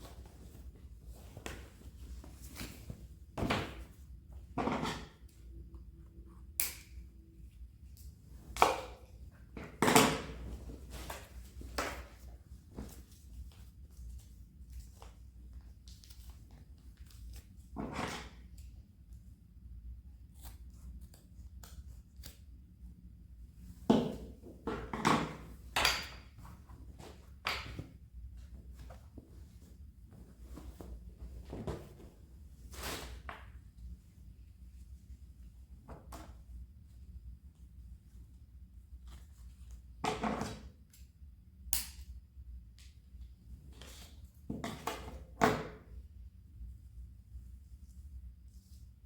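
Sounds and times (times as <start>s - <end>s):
low room hum: 0.0s - 49.0s.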